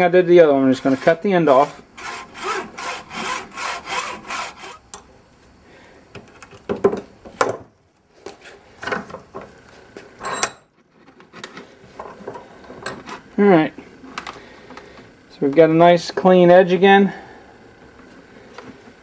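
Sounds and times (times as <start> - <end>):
saw cutting copper cable: 0.8 - 5.0.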